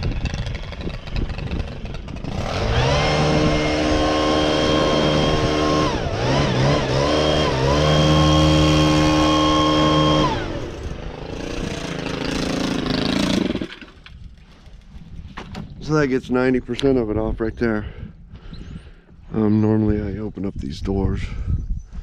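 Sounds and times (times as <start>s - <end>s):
blower running at high speed: 0.0s - 14.1s.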